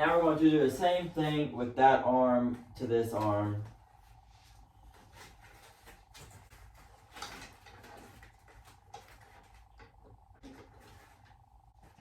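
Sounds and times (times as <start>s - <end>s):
faint steady hum: 0.0s - 12.0s
parts rustling and knocking: 4.9s - 12.0s.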